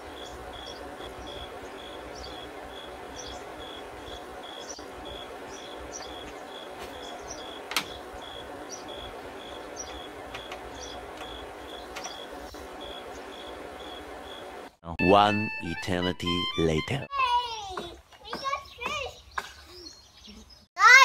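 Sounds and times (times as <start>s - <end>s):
crickets chirping: 0.0s - 14.7s.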